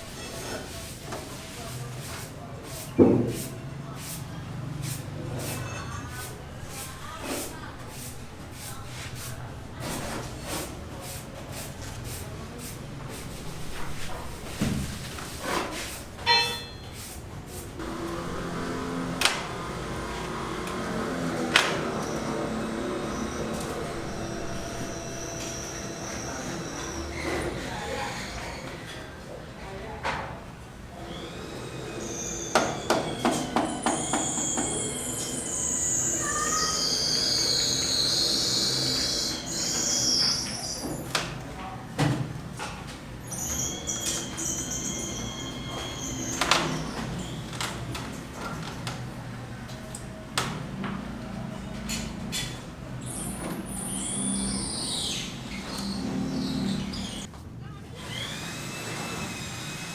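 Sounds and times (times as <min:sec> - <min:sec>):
engine hum: 0:17.8 - 0:27.0
high-pitched metallic screech: 0:17.8 - 0:28.8, 0:32.0 - 0:41.2, 0:43.2 - 0:47.3, 0:53.0 - 0:57.3.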